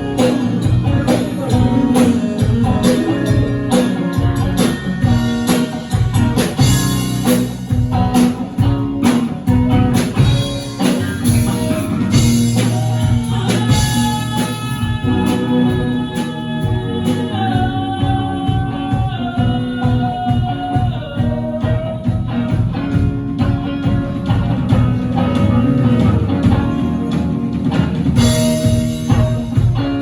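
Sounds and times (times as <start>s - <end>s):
person singing: 0.0s - 7.4s, 12.1s - 22.9s
guitar: 0.0s - 30.0s.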